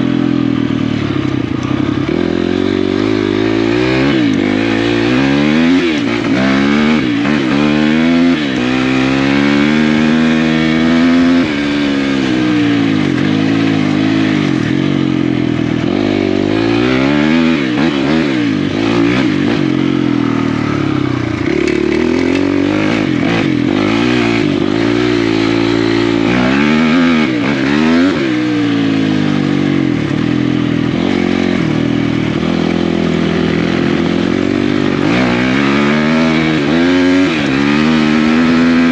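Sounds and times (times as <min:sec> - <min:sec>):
dirt bike engine revving: 0:00.0 - 0:38.9.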